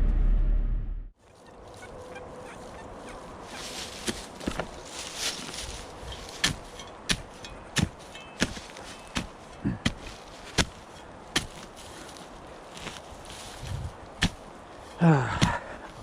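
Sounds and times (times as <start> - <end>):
digging tool chopping ground: 3.8 - 16.0.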